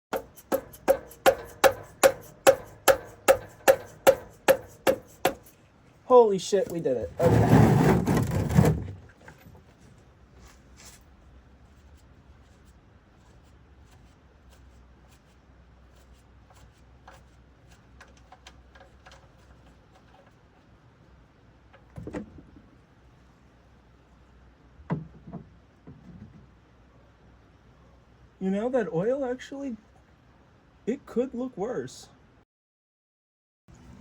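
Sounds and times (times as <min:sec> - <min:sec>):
dull knock: 0:24.9 - 0:26.5.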